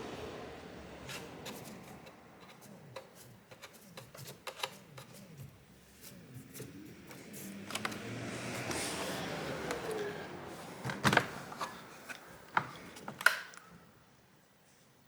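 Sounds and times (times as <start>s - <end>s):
low rubbing rumble of wheel: 0.0s - 3.5s, 5.5s - 14.0s.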